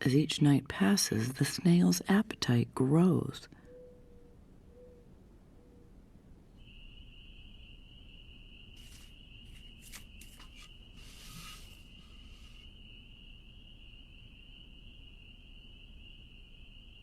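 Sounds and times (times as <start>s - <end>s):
cricket trilling: 6.5s - 17.0s.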